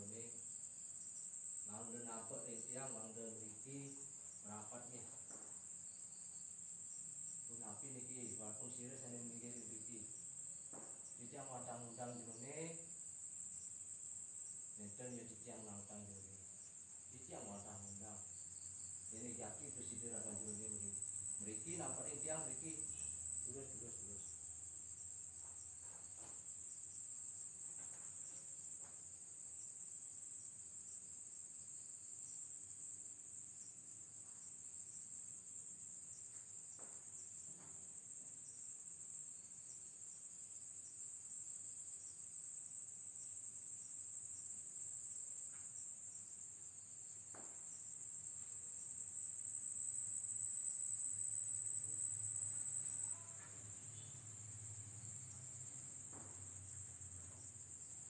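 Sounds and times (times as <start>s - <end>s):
crickets chirring: 0.0s - 58.0s
faint knocks: 5.0s - 5.7s, 10.7s - 11.2s.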